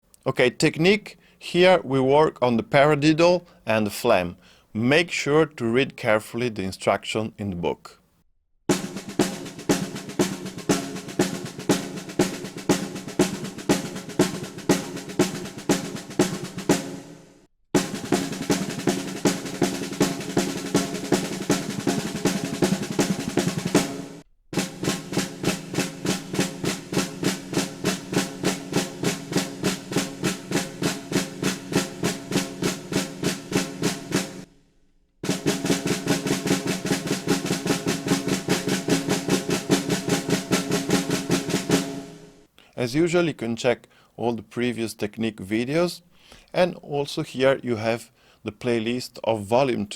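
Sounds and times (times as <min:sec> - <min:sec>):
snare drum rudiments: 0:08.7 - 0:34.5, 0:35.2 - 0:42.5.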